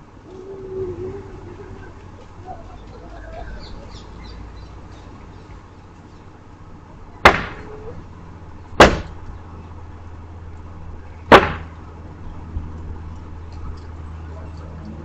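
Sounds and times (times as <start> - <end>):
loud sharp bangs: 7.2 - 7.8, 8.8 - 9.3, 11.3 - 11.8.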